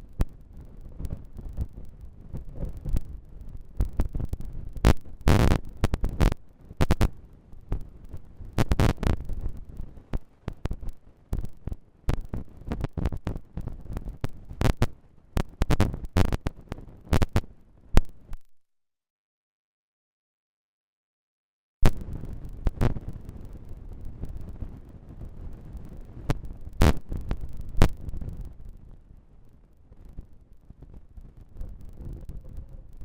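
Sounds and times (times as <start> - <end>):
sharp pops: 3.8 - 18.4, 26.3 - 28.3.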